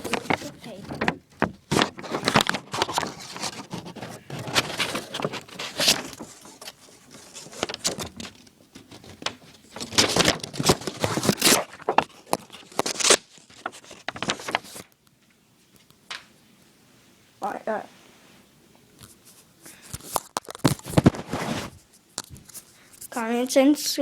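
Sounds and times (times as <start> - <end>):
knife cutting paper: 0.0 - 8.3, 8.9 - 14.8.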